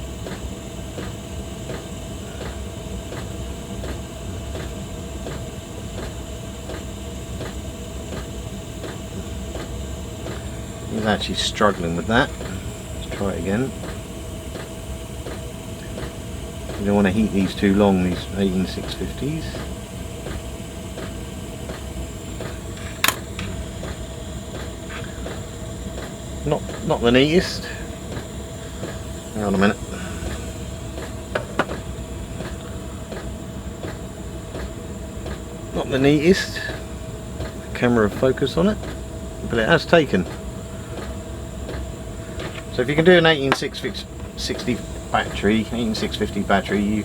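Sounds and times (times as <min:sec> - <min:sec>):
gas soldering iron flame hissing: 0:00.0 - 0:47.0
sharp click: 0:23.0 - 0:23.5.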